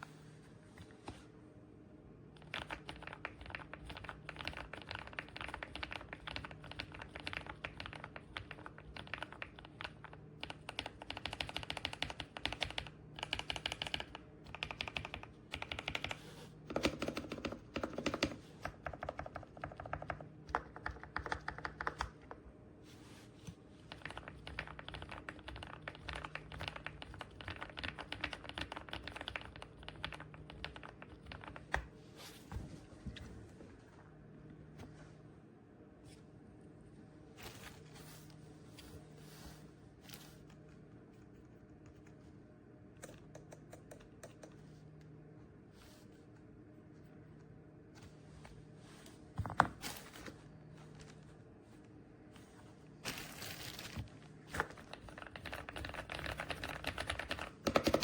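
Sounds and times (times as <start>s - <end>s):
mechanical keyboard typing: 2.4s - 22.4s, 23.9s - 31.9s, 54.6s - 58.0s.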